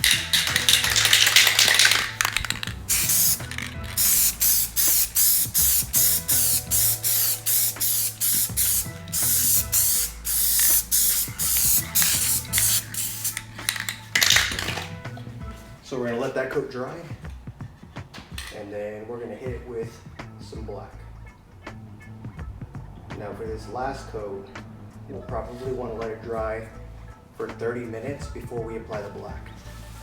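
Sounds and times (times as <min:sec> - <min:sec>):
aerosol spray can hissing: 0:00.0 - 0:15.2.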